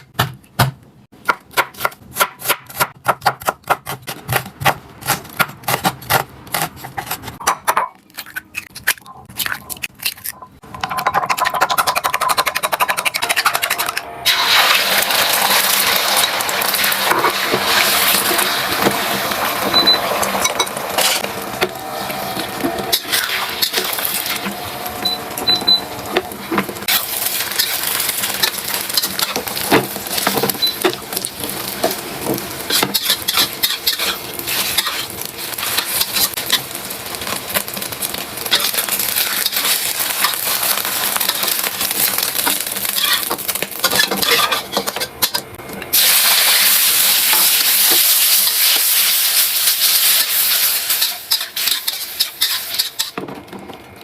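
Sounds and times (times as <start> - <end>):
food sizzling in a pan: 14.3 - 45.3, 45.9 - 53.2
utensil scraping a pan: 32.6 - 36.7, 42.8 - 45.5, 50.2 - 53.2.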